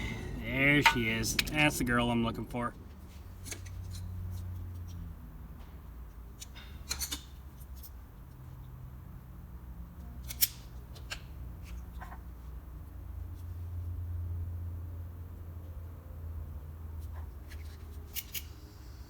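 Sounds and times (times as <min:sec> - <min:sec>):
low steady rumble: 0:00.0 - 0:06.4
clicks and snaps of hand work: 0:06.1 - 0:08.0, 0:10.2 - 0:12.2, 0:17.5 - 0:18.6.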